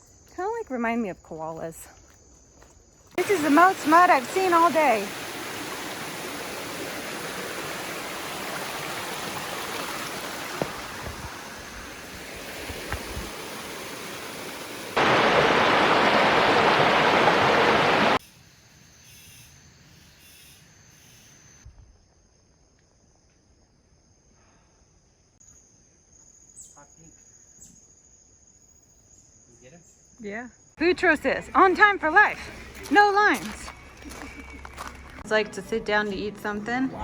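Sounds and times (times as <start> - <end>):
insect trills: 0.0 - 6.8, 18.2 - 31.9
stream water rushing: 3.2 - 18.2.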